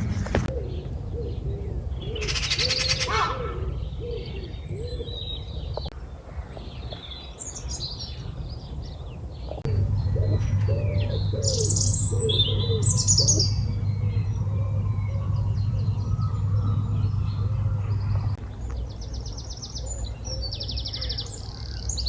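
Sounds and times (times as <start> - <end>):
pigeon cooing: 0.0 - 5.6, 9.5 - 18.4
high bird song notes: 0.0 - 22.0
steady low rumble: 0.0 - 22.0.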